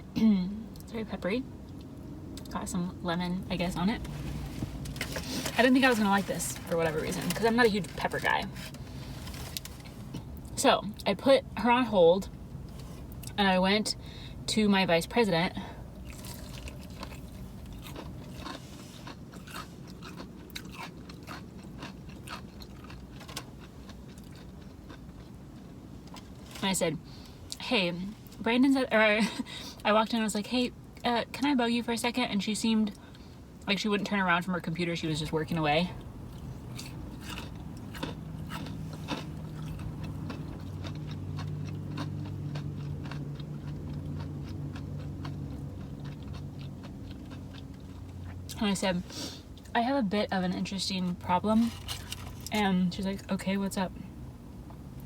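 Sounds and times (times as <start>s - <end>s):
person chewing crunchy food: 15.6s - 26.6s, 35.6s - 48.6s, 51.6s - 52.6s.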